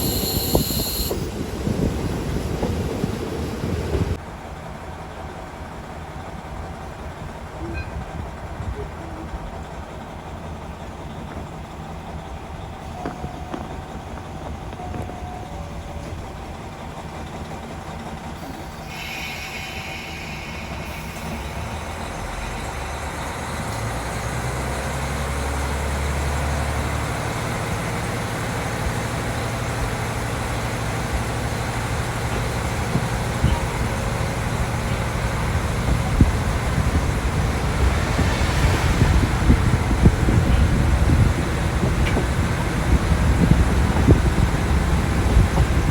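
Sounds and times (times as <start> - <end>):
diesel engine hum: 0.0 - 45.9
wheel and rail rumble: 0.0 - 45.9.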